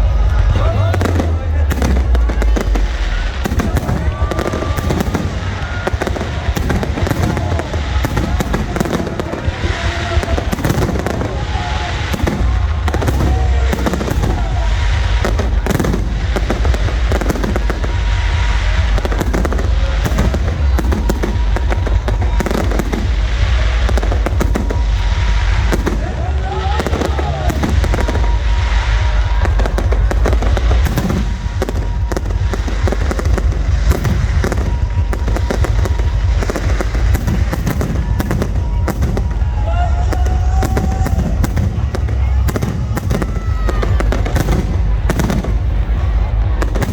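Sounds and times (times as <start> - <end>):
low rumble: 0.0 - 46.9.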